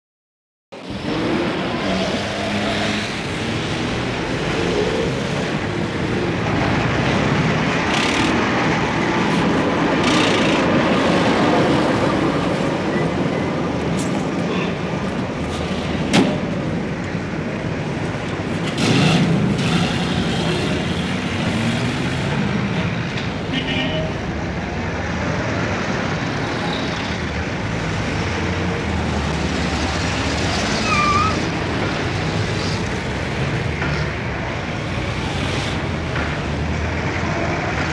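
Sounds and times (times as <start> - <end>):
heavy road traffic: 0.7 - 37.9.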